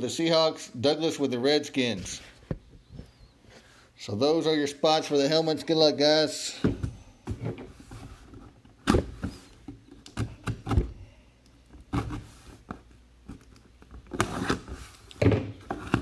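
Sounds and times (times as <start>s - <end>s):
box being handled and opened: 11.7s - 16.0s.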